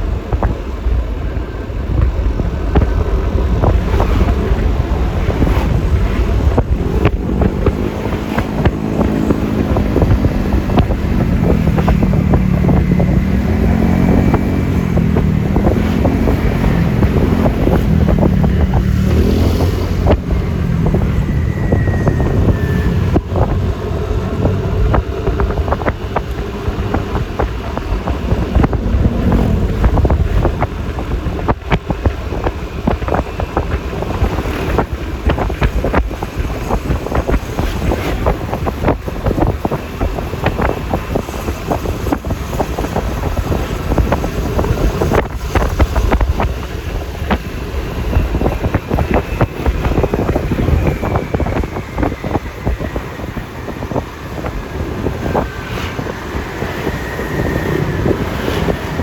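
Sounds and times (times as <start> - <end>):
wind noise on microphone: 0.0 - 59.0
scooter engine running: 2.1 - 55.6.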